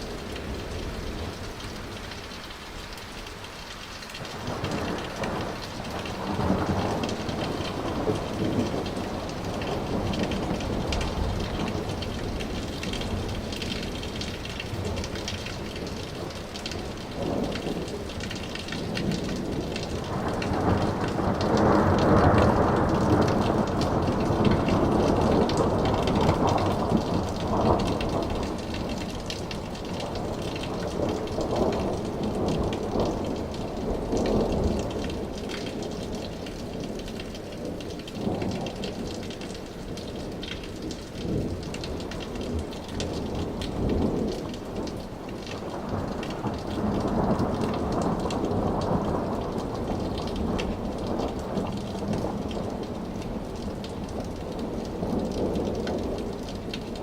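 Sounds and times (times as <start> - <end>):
steady rain falling: 0.0 - 57.0
thunder rumbling: 4.2 - 36.5.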